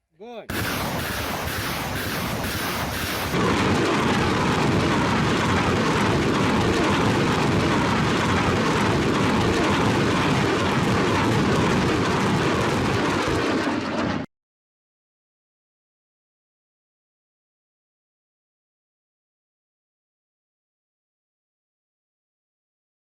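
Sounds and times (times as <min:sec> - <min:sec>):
rockets launching rushing noise: 0:00.5 - 0:14.0.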